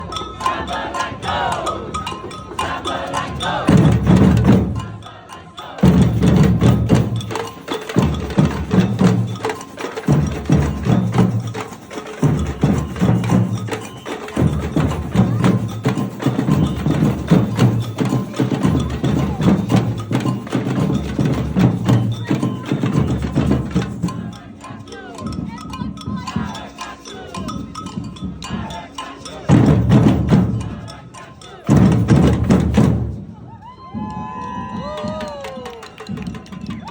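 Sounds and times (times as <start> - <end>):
low drum beat: 3.5 - 5.0, 5.8 - 24.4.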